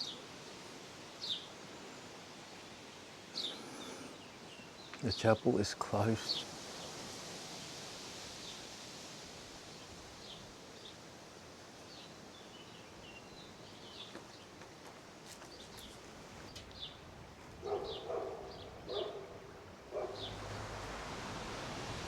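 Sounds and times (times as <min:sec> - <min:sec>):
small birds chirping: 0:00.0 - 0:07.7, 0:11.8 - 0:22.0
faint outdoor hiss: 0:00.0 - 0:22.0
lower bird calls: 0:03.3 - 0:05.0, 0:17.6 - 0:22.0.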